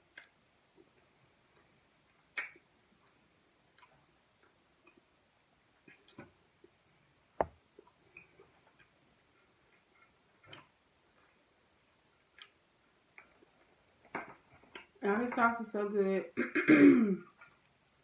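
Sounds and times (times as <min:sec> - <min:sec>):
person chewing food: 0:00.1 - 0:05.2, 0:07.8 - 0:13.7.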